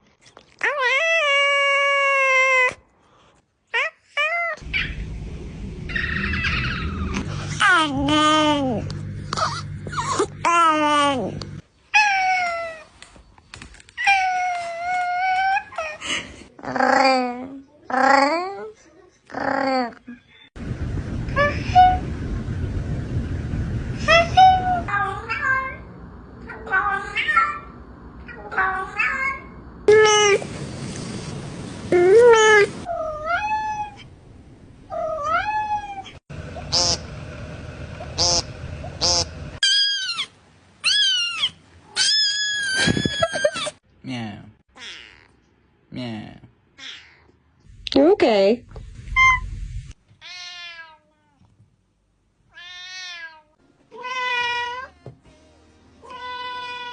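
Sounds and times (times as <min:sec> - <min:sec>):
cat meowing: 0:50.2 - 0:51.4, 0:56.0 - 0:56.9.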